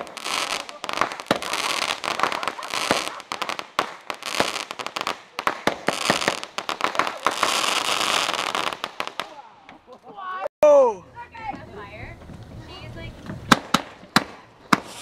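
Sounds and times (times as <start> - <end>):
fireworks fizzing hiss: 0.0 - 9.4, 13.5 - 15.0
fireworks pops and bangs: 0.0 - 10.1, 11.4 - 15.0.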